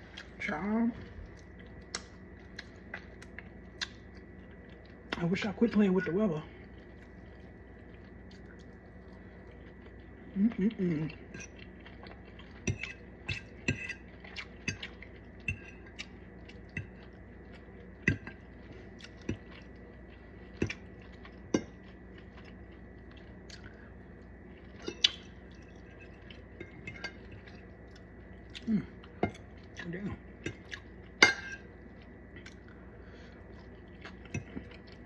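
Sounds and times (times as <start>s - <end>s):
chewing: 6.7s - 35.0s
cutlery clinking on a plate: 31.2s - 31.6s.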